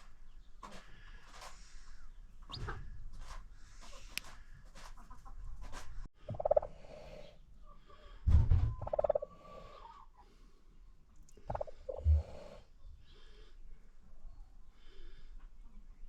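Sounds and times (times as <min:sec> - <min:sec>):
chickens calling: 0:00.0 - 0:16.0
dull thump: 0:08.3 - 0:08.8.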